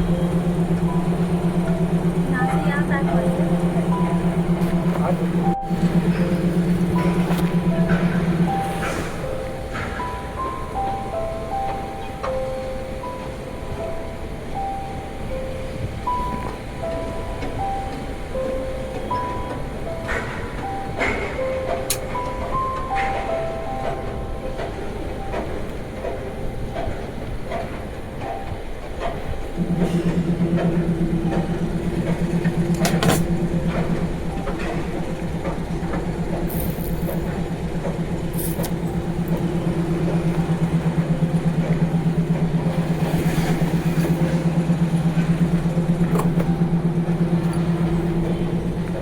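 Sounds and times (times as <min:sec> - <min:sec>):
washing machine motor humming: 0:00.0 - 0:49.0.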